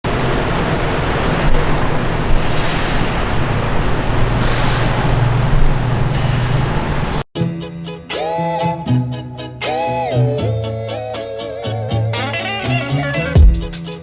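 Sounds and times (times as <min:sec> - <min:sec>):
road traffic rushing: 0:00.0 - 0:07.3
vehicle engine hum: 0:00.0 - 0:07.3.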